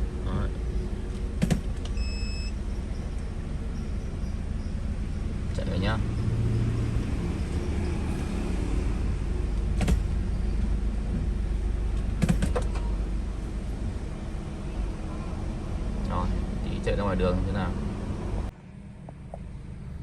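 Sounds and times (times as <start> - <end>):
car engine running: 0.0 - 20.0.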